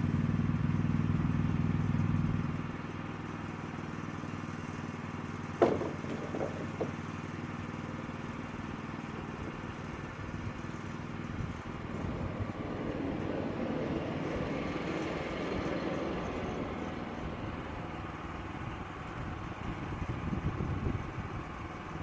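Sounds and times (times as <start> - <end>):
sawmill engine running: 0.2 - 20.2
sharp knocks: 5.6 - 7.1.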